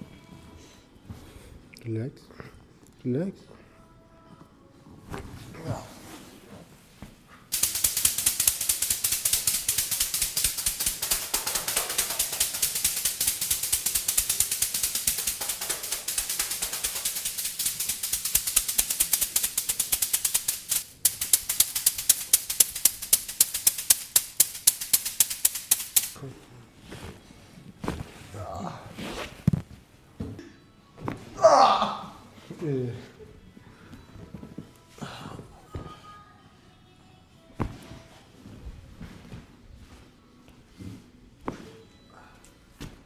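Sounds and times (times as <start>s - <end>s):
rapid sharp clicking: 7.5s - 26.2s.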